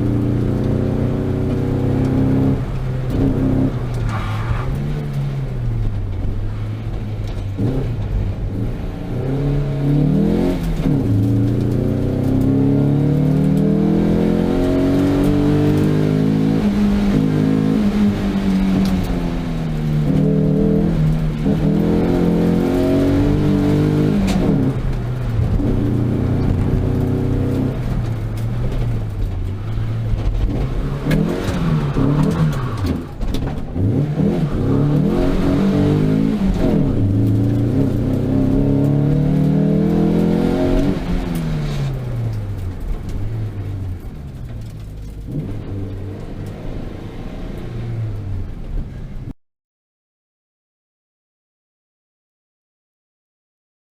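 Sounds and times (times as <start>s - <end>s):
car engine revving: 0.0s - 49.0s.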